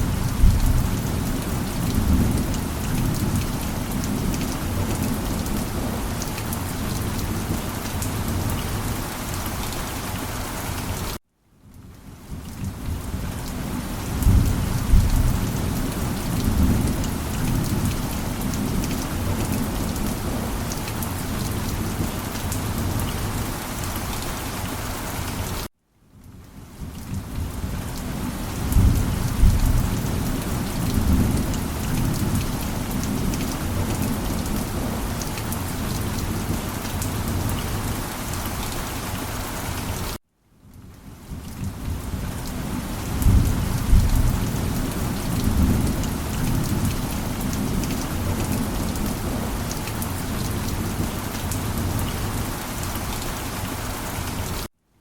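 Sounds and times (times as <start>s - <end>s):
low rolling thunder: 0.0s - 6.1s, 12.6s - 20.6s, 27.1s - 37.9s, 41.6s - 49.7s
heavy rain: 0.0s - 25.7s, 26.3s - 54.7s.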